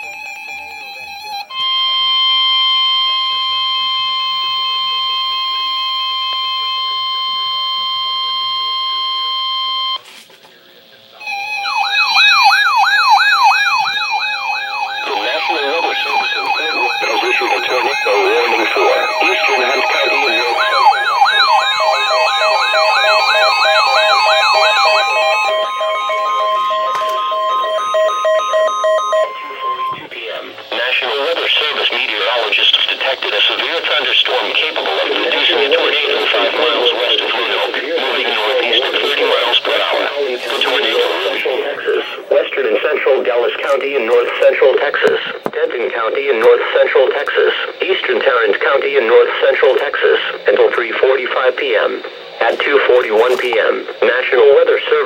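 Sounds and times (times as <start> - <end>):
electronic siren wailing: 0.0 - 10.0, 11.2 - 30.1
steady pulsing beep: 0.0 - 10.0, 11.2 - 30.1, 30.8 - 55.0
steady warning alarm tone: 0.0 - 10.0, 11.1 - 55.0
steady alert tone: 11.2 - 30.1.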